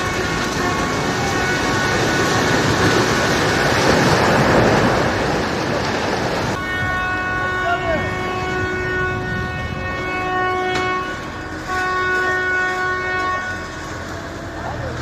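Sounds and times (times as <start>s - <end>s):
vehicle horns blaring: 0.0s - 3.7s, 6.6s - 14.1s
building collapsing: 0.0s - 12.0s.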